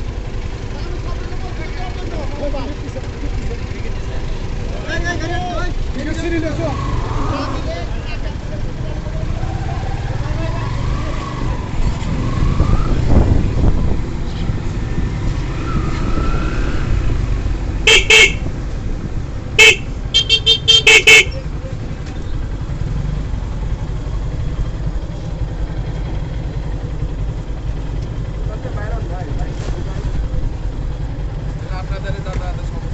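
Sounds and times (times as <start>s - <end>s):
road traffic rumble: 0.0s - 32.9s
vehicle horns honking: 17.8s - 18.6s, 19.5s - 21.6s.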